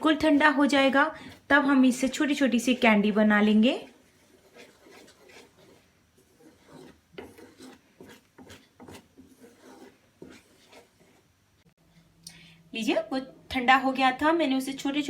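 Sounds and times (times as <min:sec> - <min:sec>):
spoon scraping a cooking pan: 0:00.7 - 0:11.3.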